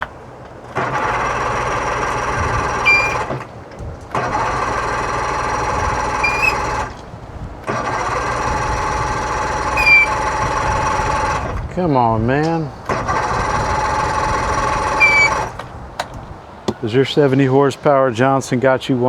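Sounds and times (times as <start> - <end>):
outboard engine cranking: 0.0 - 17.1
starter squeal: 0.8 - 3.5, 4.1 - 11.6, 12.5 - 15.6.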